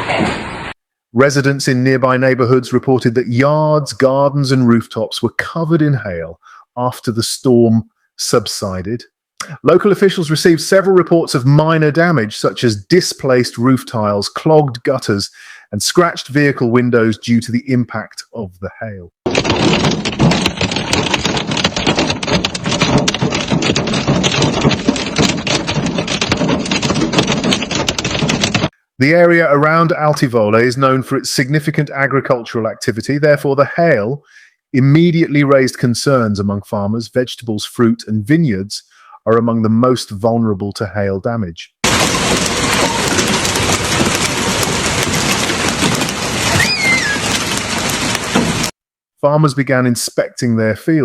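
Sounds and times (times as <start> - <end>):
hailstones clicking: 19.3 - 28.7, 41.8 - 48.7
heavy rain hissing: 41.8 - 48.7.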